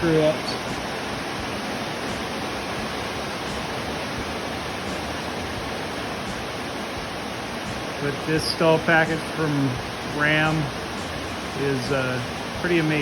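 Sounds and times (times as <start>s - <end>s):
heavy rain on barn: 0.0s - 4.8s, 5.4s - 13.0s.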